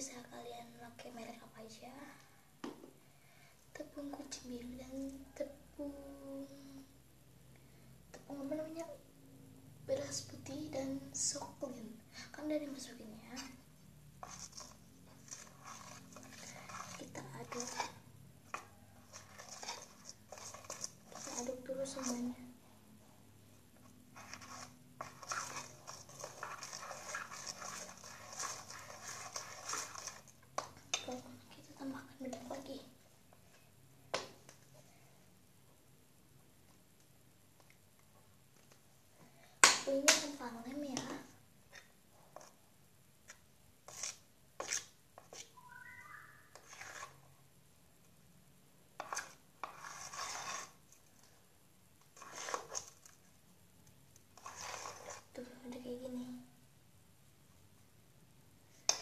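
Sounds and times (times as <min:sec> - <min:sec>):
slime being stirred: 0:10.0 - 0:22.6, 0:23.2 - 0:33.5, 0:39.5 - 0:47.4, 0:48.9 - 0:56.0, 0:58.7 - 0:59.0
brief squeak: 0:45.6 - 0:46.5.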